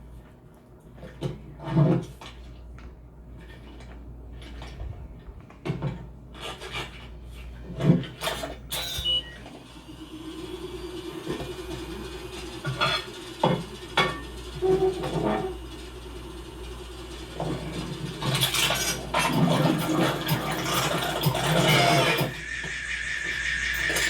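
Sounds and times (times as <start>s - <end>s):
steady mechanical hum: 0.0s - 24.0s
objects scraping and knocking: 5.7s - 8.6s, 17.4s - 22.4s.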